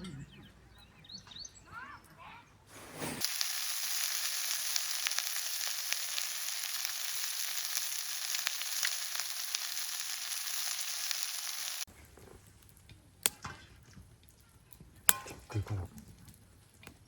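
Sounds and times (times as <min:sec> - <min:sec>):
food sizzling in a pan: 0:02.9 - 0:11.9.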